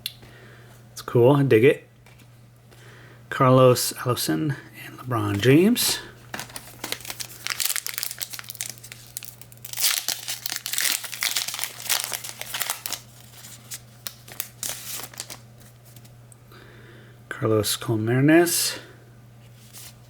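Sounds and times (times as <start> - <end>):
foil wrapper crinkling and tearing: 5.9 - 16.0.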